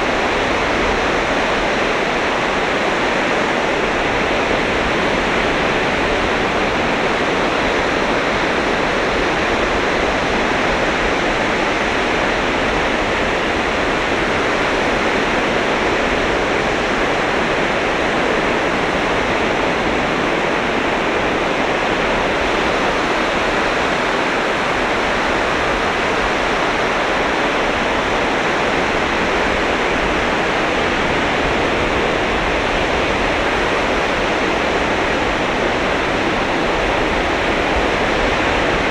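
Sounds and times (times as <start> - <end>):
waves breaking on beach: 0.0 - 38.9.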